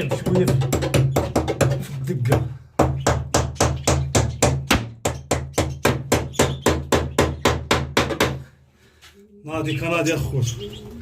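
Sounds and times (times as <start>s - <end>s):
hammer striking nail: 2.8s - 8.4s.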